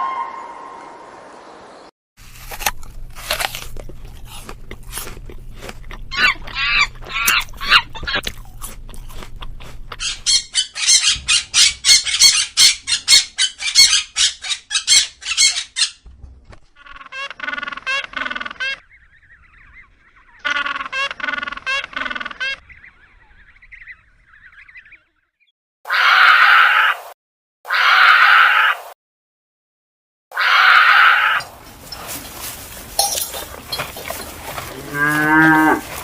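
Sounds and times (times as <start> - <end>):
fowl clucking and squawking: 20.4 - 22.6.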